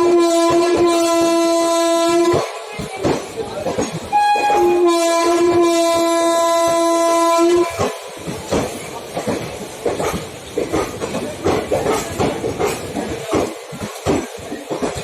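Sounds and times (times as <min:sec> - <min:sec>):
train horn: 0:00.0 - 0:02.5, 0:04.1 - 0:08.0
train wheels clattering on rail joints: 0:00.0 - 0:15.0.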